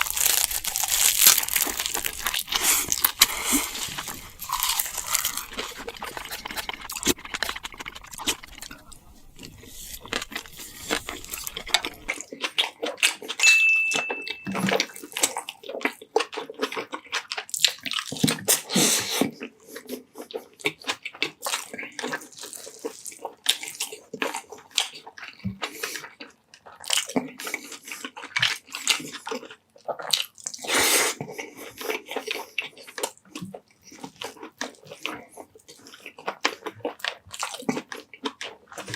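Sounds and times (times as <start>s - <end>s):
wet chewing and slurping: 0.0s - 13.4s, 14.3s - 38.9s
short high tone: 13.4s - 14.8s.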